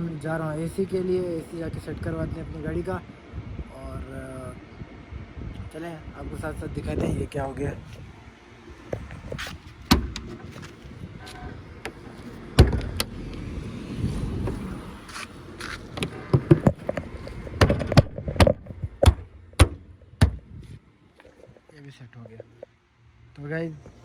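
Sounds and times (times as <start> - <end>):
low rumble: 4.5 - 20.8
knocks and clicks on car body: 12.6 - 13.1, 15.9 - 20.5.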